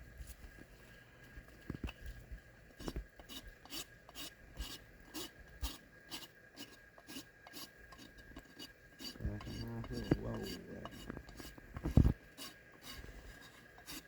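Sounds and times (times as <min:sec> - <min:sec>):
hoof rasp filing hoof: 0:02.8 - 0:14.0.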